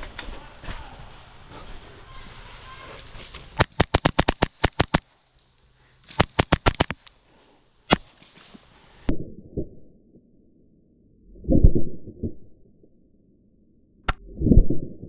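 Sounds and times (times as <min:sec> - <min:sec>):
airsoft pistol shots: 0:03.6 - 0:05.0, 0:06.2 - 0:07.0, 0:07.9 - 0:08.2.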